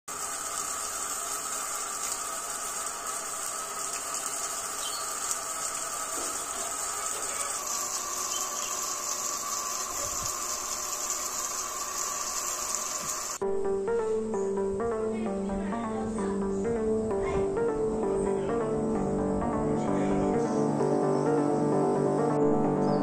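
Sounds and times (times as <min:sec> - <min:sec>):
insect chorus buzzing: 0:03.2 - 0:13.4.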